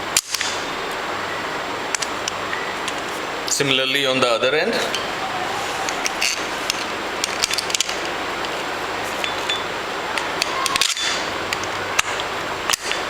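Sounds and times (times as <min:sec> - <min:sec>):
steady hiss: 0:00.0 - 0:13.0
metal parts clicking: 0:05.8 - 0:13.0.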